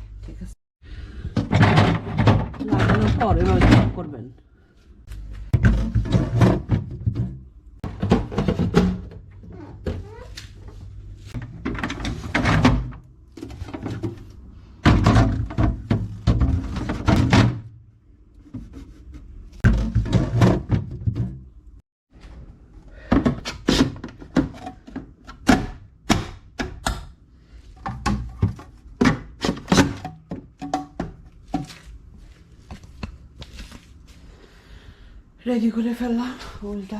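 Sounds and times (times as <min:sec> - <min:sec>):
plastic fridge drawers clattering: 0:01.4 - 0:04.0, 0:05.6 - 0:10.1, 0:11.4 - 0:17.7, 0:19.7 - 0:21.4.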